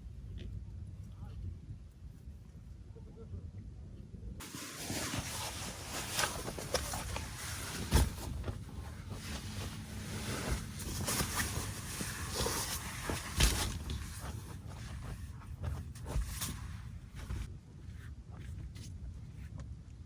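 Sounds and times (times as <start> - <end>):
rustling and handling noises: 4.4 - 19.6.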